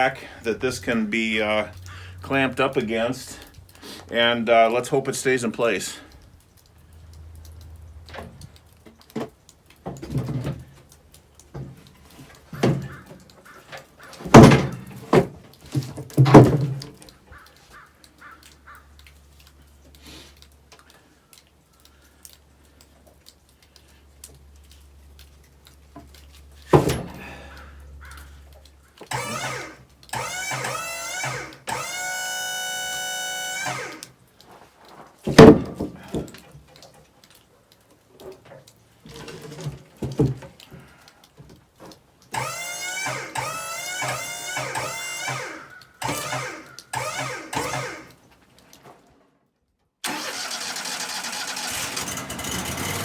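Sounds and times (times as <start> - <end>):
wooden boards thumping: 14.2 - 16.8, 35.3 - 36.3.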